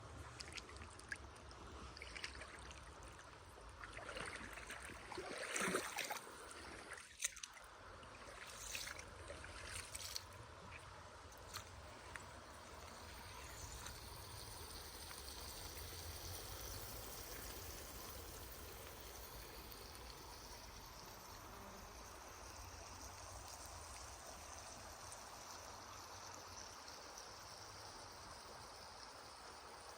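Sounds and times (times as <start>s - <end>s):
flowing water: 0.0s - 29.9s.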